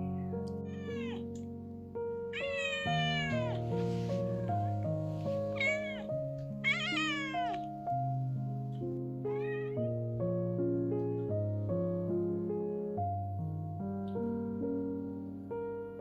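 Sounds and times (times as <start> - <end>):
piano music: 0.0 - 16.0
cat meowing: 0.6 - 1.3, 2.4 - 4.0, 5.5 - 7.7, 9.2 - 9.9.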